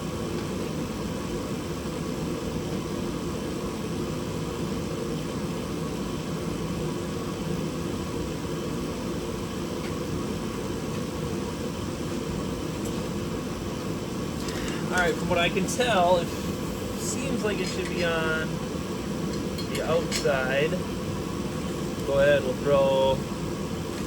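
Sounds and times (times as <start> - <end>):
blower rushing: 9.2 - 24.0.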